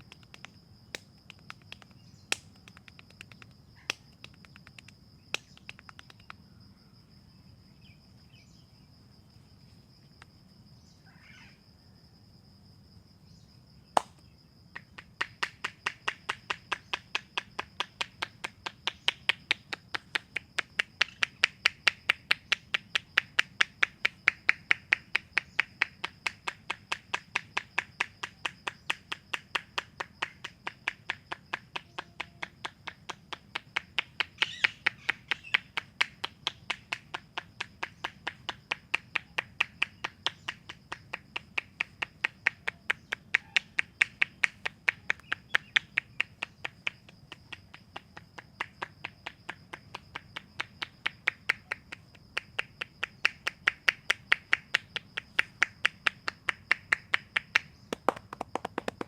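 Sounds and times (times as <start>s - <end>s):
hands tapping on a head: 0.0s - 6.4s, 14.0s - 59.0s
scattered clicks: 0.0s - 6.4s
insect chirring: 0.0s - 59.0s.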